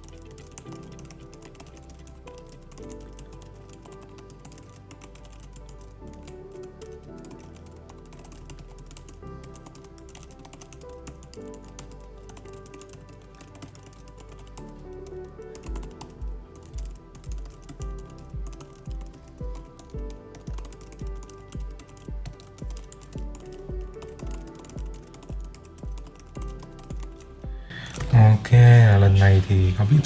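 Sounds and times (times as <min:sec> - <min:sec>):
background music: 0:00.0 - 0:30.0
steady low thumps: 0:16.2 - 0:27.7.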